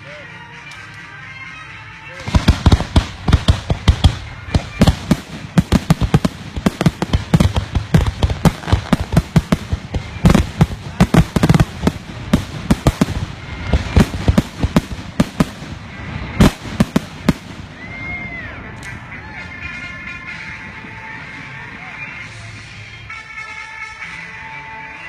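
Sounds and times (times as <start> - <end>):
fireworks bangs and crackles: 2.1 - 18.4.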